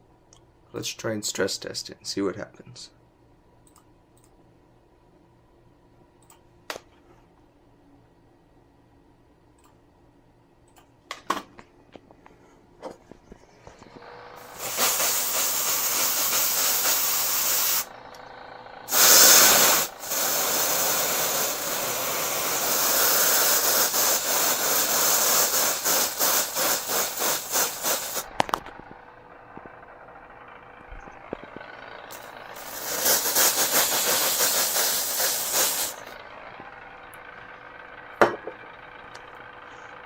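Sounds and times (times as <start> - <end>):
aerosol spray hissing: 14.4 - 17.9, 18.9 - 28.3, 32.1 - 36.1.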